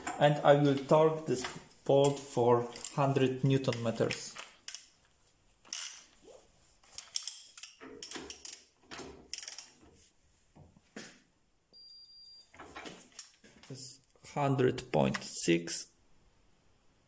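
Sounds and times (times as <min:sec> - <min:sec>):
torque wrench clicks and rasps: 0:09.3 - 0:09.8
high electronic beep: 0:11.8 - 0:12.4.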